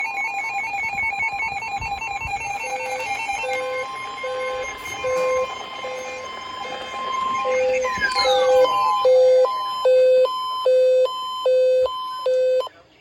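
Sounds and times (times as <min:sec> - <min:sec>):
two-pitch alarm warble: 0:00.0 - 0:12.7
steady alert tone: 0:02.2 - 0:11.9
low repeating beep: 0:02.8 - 0:12.7.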